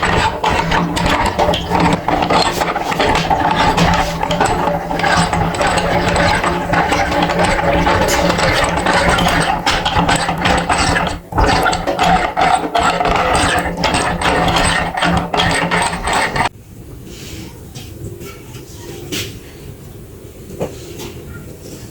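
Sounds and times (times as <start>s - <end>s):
crackling and clicking of crushing: 0.0s - 16.5s
meat grinder motor hum: 0.0s - 16.5s.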